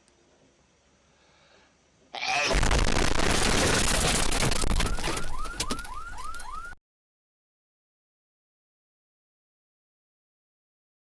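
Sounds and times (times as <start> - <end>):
harsh explosion-like noise: 2.5 - 5.3.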